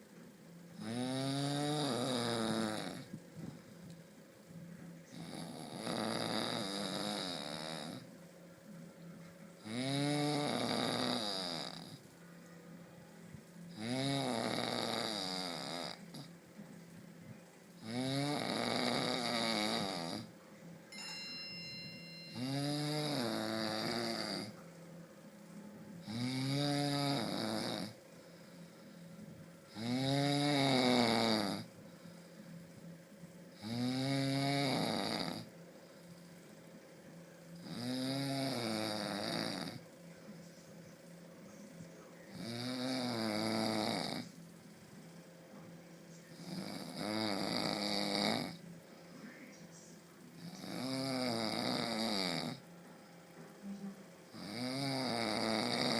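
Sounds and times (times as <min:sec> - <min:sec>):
quiet breaths: 0:00.0 - 0:55.9
person snoring heavily: 0:00.8 - 0:03.1, 0:05.2 - 0:08.0, 0:09.6 - 0:12.0, 0:13.7 - 0:16.3, 0:17.8 - 0:20.3, 0:22.3 - 0:24.5, 0:26.0 - 0:28.0, 0:29.7 - 0:31.7, 0:33.6 - 0:35.5, 0:37.6 - 0:39.8, 0:42.4 - 0:44.3, 0:46.4 - 0:48.6, 0:50.4 - 0:52.6, 0:54.4 - 0:55.9.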